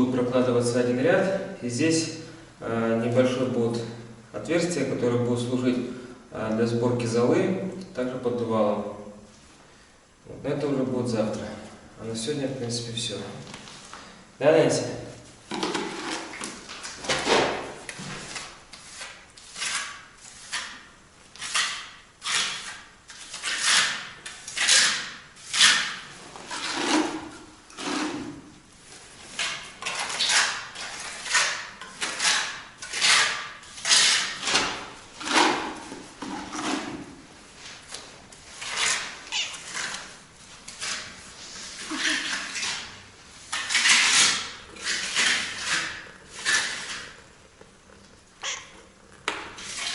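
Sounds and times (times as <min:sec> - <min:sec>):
scraping strokes: 0:29.0 - 0:47.3.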